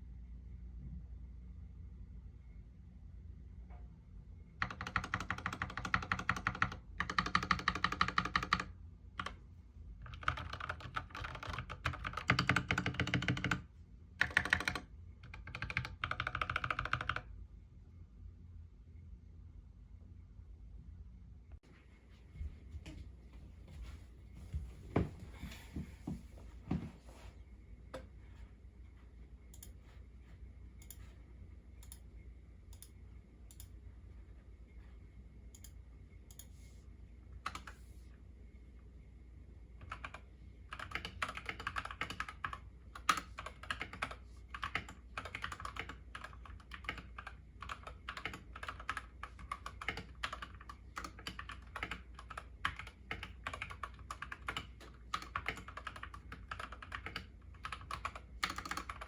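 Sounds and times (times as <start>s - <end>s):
mechanical keyboard typing: 4.6s - 9.4s, 10.0s - 17.3s, 39.8s - 59.0s.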